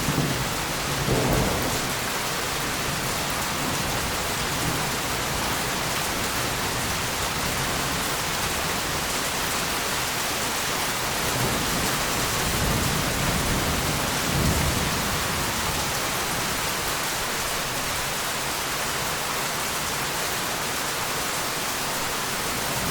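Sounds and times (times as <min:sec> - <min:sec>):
low roll of thunder: 0:00.0 - 0:05.8
heavy rain falling: 0:00.0 - 0:22.9.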